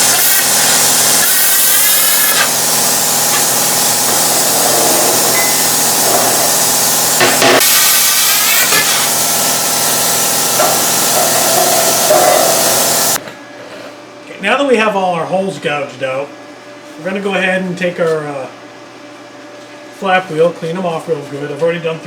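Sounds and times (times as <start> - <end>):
plasma cutter cutting steel: 0.0 - 13.2.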